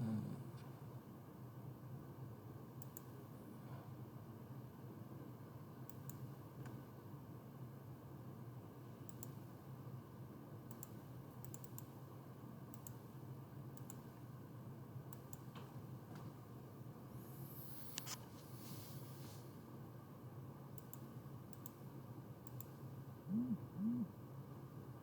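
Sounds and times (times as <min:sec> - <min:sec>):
faint steady hum: 0:00.0 - 0:25.0
computer mouse clicks: 0:02.8 - 0:03.2, 0:05.9 - 0:06.8, 0:09.1 - 0:09.4, 0:10.7 - 0:11.9, 0:12.7 - 0:13.0, 0:13.8 - 0:14.1, 0:15.1 - 0:15.7, 0:20.8 - 0:21.8, 0:22.4 - 0:22.8.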